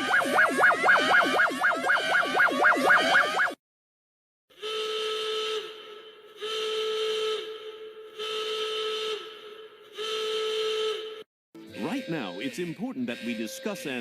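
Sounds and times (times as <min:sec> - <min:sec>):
horn-like whistle blasts: 0:00.0 - 0:03.6, 0:04.5 - 0:14.0.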